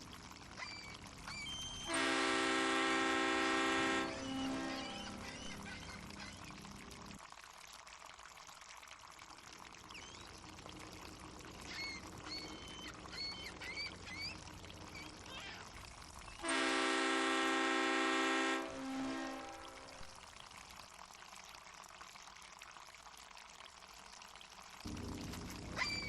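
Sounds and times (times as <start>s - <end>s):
boat horn blast: 1.9s - 5.2s, 16.4s - 20.1s
seagulls calling: 11.6s - 15.5s, 25.7s - 26.0s
water washing: 23.0s - 26.0s.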